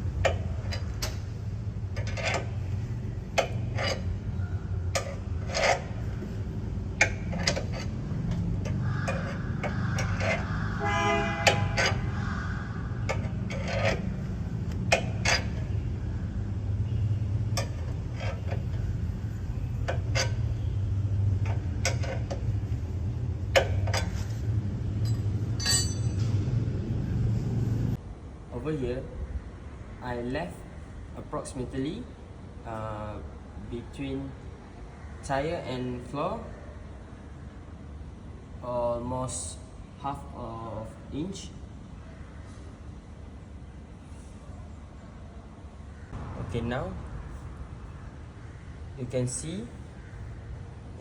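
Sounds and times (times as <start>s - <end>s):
car jack metal clicks: 0.2s - 1.3s, 3.3s - 4.1s, 7.0s - 10.5s, 11.4s - 12.0s, 13.0s - 15.8s, 21.4s - 22.7s, 23.5s - 24.3s
car horn honking: 10.6s - 12.1s.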